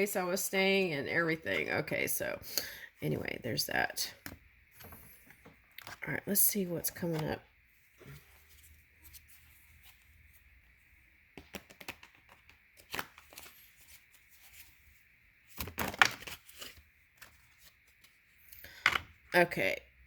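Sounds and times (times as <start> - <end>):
cards clicking and rustling: 11.4 - 14.6, 15.5 - 18.1.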